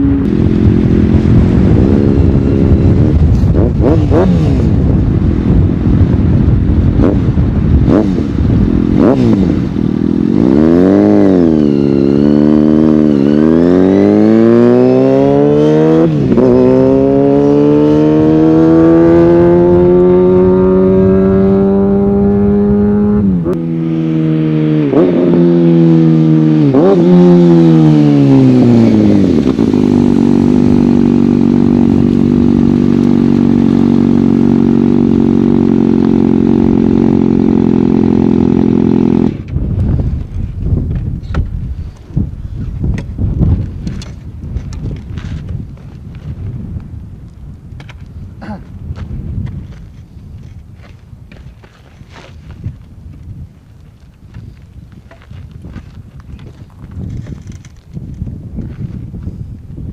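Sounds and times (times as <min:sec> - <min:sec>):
motorcycle engine revving: 0:00.0 - 0:42.0.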